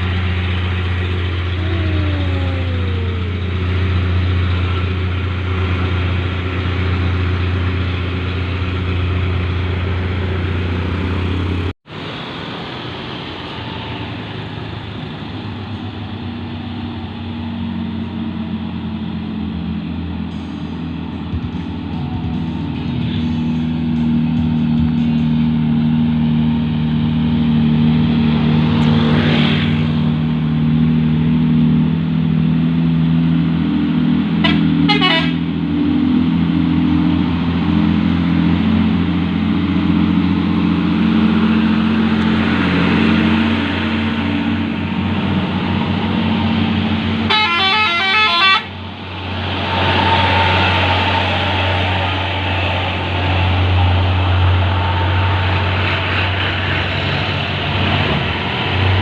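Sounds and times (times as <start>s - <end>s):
truck diesel engines running: 0.0s - 59.0s
truck air horn blasts: 34.4s - 35.6s, 47.2s - 48.8s.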